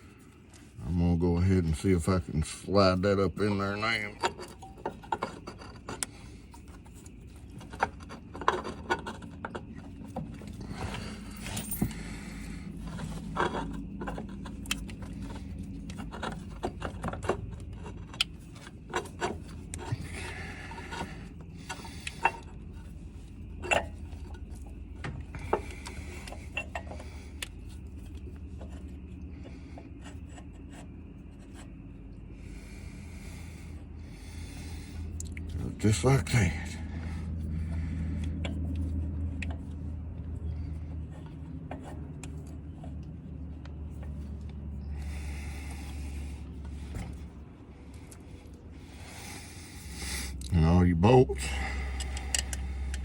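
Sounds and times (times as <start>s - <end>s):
steady low hum: 0.0s - 53.0s
metal parts clinking and knocking: 2.8s - 28.9s, 51.7s - 53.0s.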